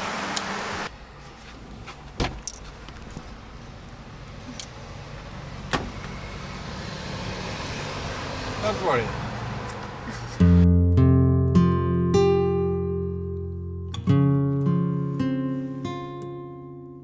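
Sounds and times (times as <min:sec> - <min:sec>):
car engine and road hum: 0:00.0 - 0:10.7.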